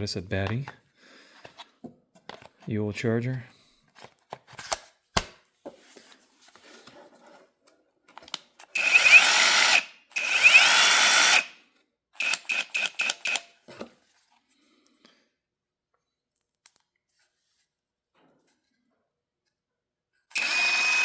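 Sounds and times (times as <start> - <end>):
impact wrench spinning: 8.8 - 11.5.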